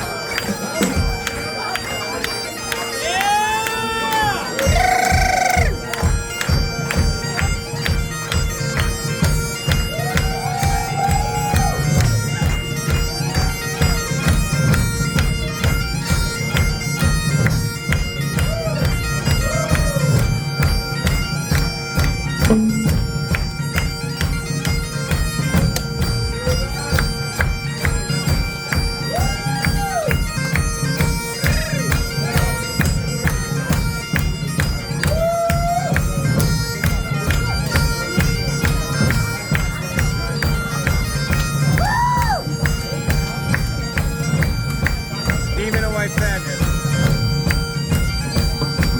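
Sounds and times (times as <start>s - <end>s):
bagpipes playing: 0.0s - 48.9s
rock band beat: 4.5s - 38.8s.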